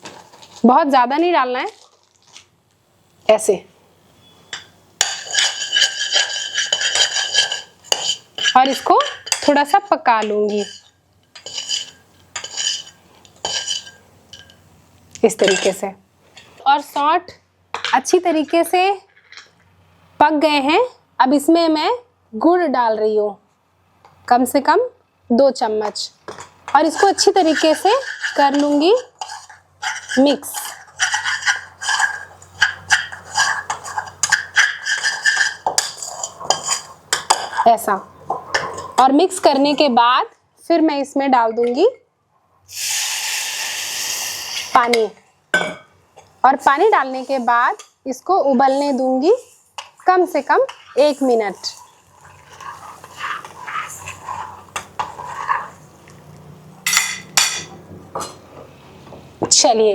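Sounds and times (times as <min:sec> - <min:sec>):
spoon stirring and scraping in pan: 0:00.0 - 0:00.7, 0:04.2 - 0:17.0, 0:26.3 - 0:39.9, 0:48.6 - 0:58.7
spoon clinking: 0:10.2 - 0:14.6.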